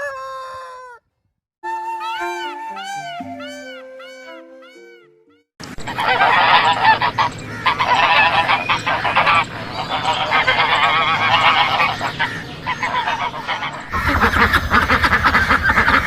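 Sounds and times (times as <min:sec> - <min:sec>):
waterfowl honking and quacking: 0:05.8 - 0:16.0.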